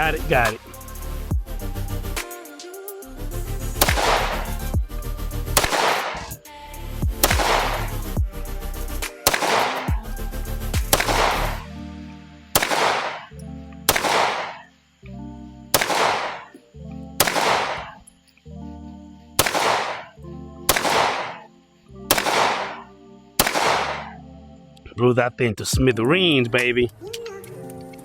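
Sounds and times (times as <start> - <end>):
background music: 0.0 - 28.0
pistol shots with echo: 3.8 - 4.6, 5.6 - 6.4, 7.2 - 8.0, 9.2 - 10.0, 10.9 - 11.6, 12.6 - 13.3, 13.9 - 14.7, 15.8 - 16.6, 17.2 - 18.1, 19.4 - 21.5, 22.1 - 24.2.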